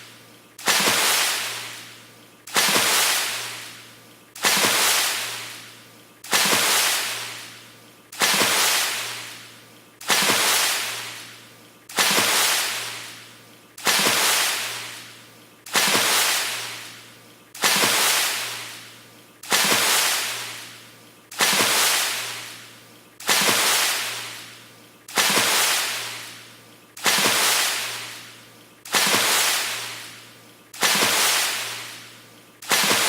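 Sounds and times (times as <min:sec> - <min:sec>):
water splash with hissing spray: 0:00.0 - 0:33.0.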